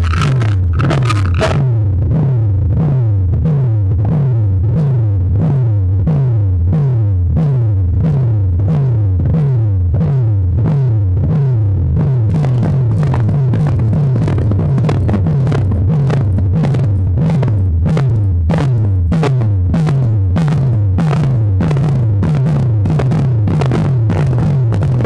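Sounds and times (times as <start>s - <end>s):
electronic dance music: 0.0s - 1.6s
synth bass sliding downward: 0.0s - 2.4s.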